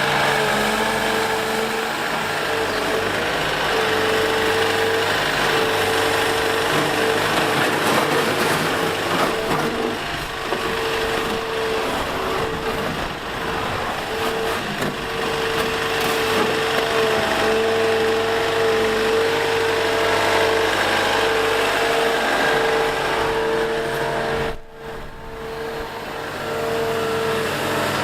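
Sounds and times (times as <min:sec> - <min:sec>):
excavator diesel engine running: 0:00.0 - 0:28.0.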